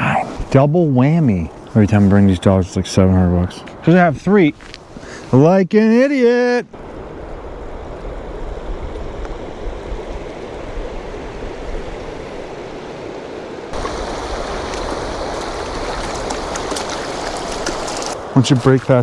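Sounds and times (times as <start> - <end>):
stream rushing: 6.8 - 19.0.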